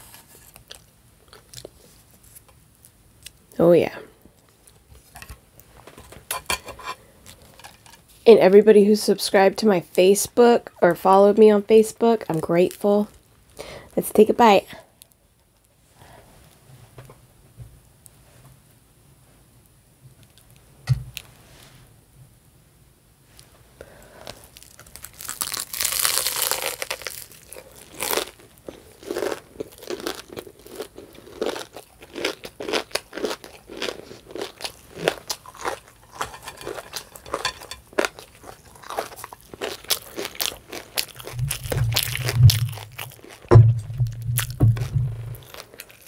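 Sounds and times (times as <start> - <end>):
crunchy chewing: 24.2 - 46.0
crunchy bite: 24.4 - 46.0
low hum: 41.2 - 45.8.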